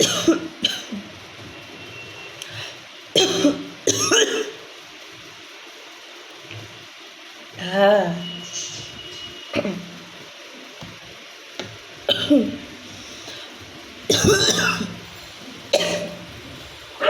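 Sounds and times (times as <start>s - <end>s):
woman coughing: 0.0s - 1.0s, 3.2s - 4.6s, 9.6s - 9.9s, 12.1s - 12.6s, 14.1s - 15.0s, 15.7s - 16.2s.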